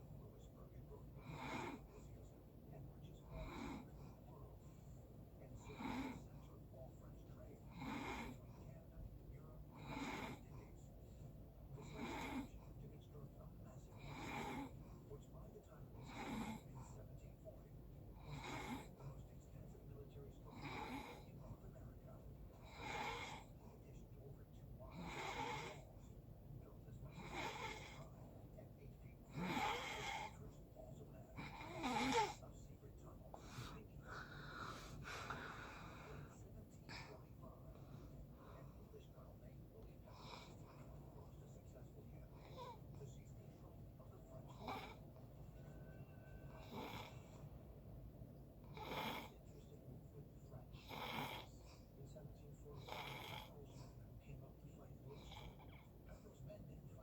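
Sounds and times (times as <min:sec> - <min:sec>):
snoring breaths: 0:01.0 - 0:02.3, 0:03.2 - 0:06.6, 0:07.5 - 0:08.8, 0:09.6 - 0:12.8, 0:13.8 - 0:15.1, 0:15.8 - 0:17.1, 0:18.1 - 0:19.5, 0:20.4 - 0:21.7, 0:22.5 - 0:23.8, 0:24.8 - 0:26.2, 0:27.0 - 0:28.5, 0:29.1 - 0:30.7, 0:31.3 - 0:32.7, 0:33.3 - 0:39.2, 0:39.9 - 0:43.5, 0:44.4 - 0:45.7, 0:46.4 - 0:47.6, 0:48.6 - 0:49.9, 0:50.6 - 0:52.0, 0:52.8 - 0:54.2, 0:55.0 - 0:56.4
person snoring: 0:24.9 - 0:25.8, 0:29.3 - 0:30.4, 0:31.4 - 0:32.4, 0:46.5 - 0:47.4.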